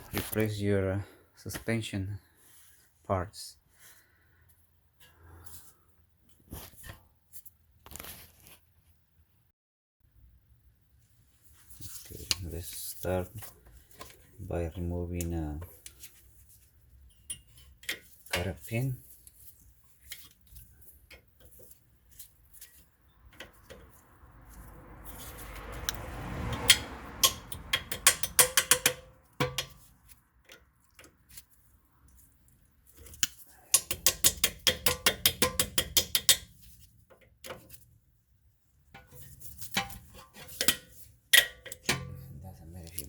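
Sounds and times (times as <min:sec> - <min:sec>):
metal hand tools clicking: 0:26.6 - 0:29.8, 0:33.2 - 0:36.5.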